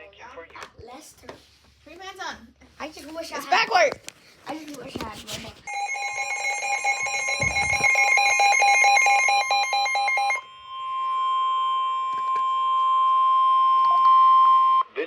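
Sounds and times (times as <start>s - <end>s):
harsh two-pitch alert tone: 5.7s - 10.5s
steady high tone: 5.7s - 12.1s.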